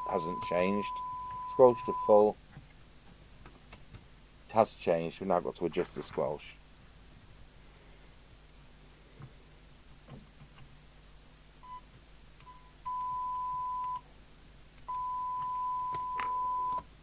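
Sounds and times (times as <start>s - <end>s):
radio test tone: 0.0s - 2.2s.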